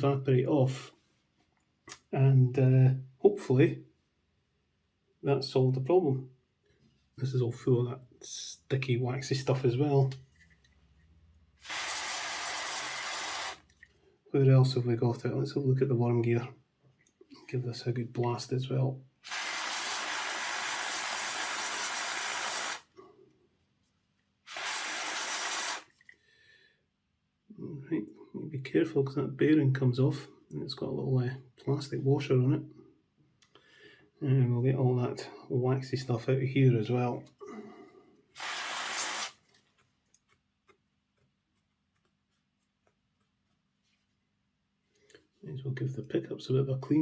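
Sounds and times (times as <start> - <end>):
aerosol spray hissing: 11.6 - 13.6, 19.2 - 22.9, 24.5 - 25.9, 38.4 - 39.4.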